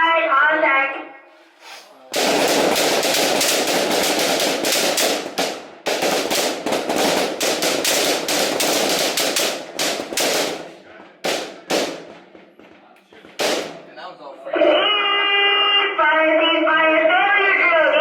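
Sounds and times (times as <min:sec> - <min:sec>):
rifle volley: 0:02.1 - 0:14.0.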